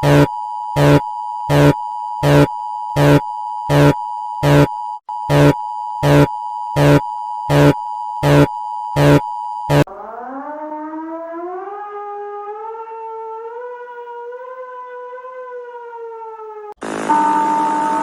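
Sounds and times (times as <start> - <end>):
two-tone alert signal: 0.0 - 4.7, 5.3 - 9.9
harsh buzzing blast: 16.8 - 18.0.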